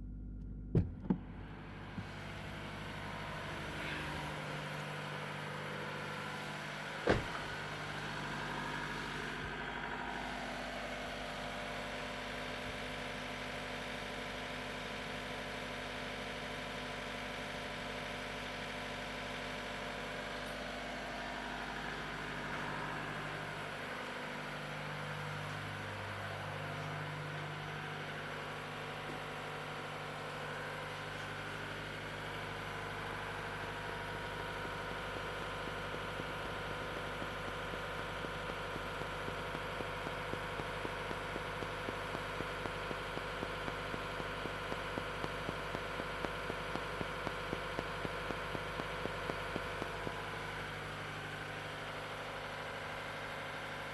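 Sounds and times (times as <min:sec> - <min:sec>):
car engine idling: 0:00.0 - 0:53.9
sharp clicks: 0:36.2 - 0:50.8.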